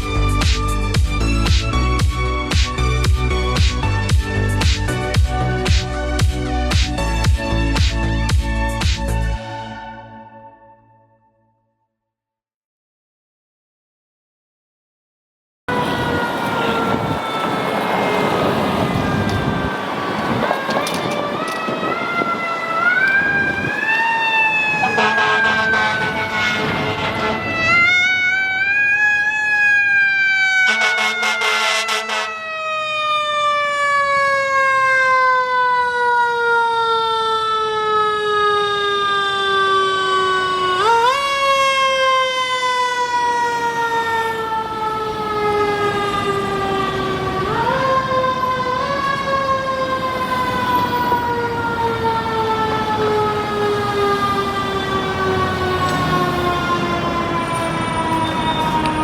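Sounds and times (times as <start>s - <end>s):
harsh horn blast: 15.7s - 19.6s, 24.7s - 27.9s, 30.6s - 32.4s
fire truck siren winding: 15.7s - 59.0s.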